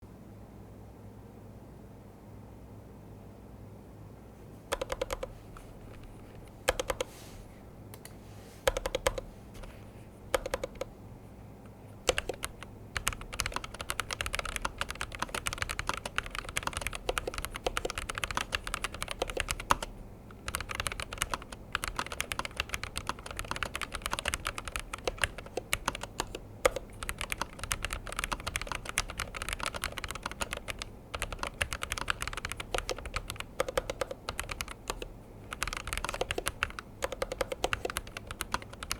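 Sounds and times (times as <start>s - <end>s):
mechanical keyboard typing: 4.7s - 5.4s, 6.7s - 7.1s, 8.7s - 10.9s, 12.0s - 38.9s.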